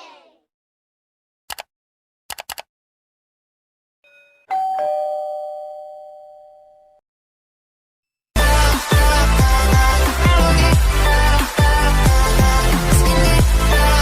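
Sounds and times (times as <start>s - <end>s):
sharp clicks: 1.5s - 1.7s, 2.3s - 2.7s
two-note doorbell chime: 4.1s - 7.0s.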